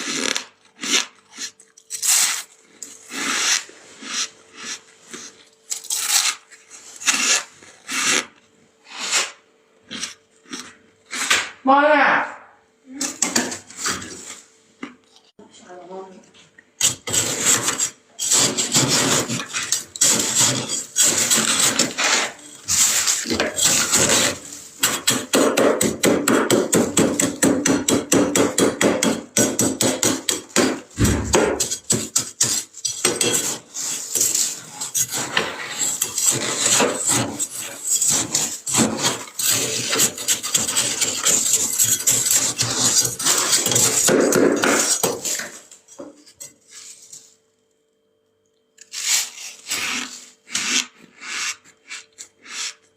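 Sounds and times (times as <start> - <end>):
frost being scraped: 0.0 - 8.3, 16.8 - 25.2, 30.9 - 44.1, 48.8 - 52.9.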